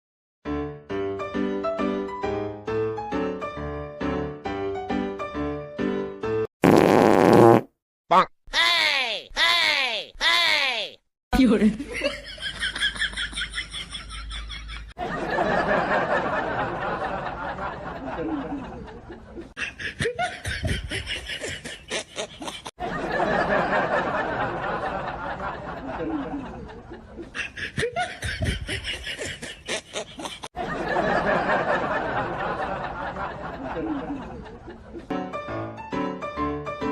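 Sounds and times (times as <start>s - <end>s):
wet fart sound: 6.6s - 7.8s
people snickering and laughing: 12.0s - 35.1s.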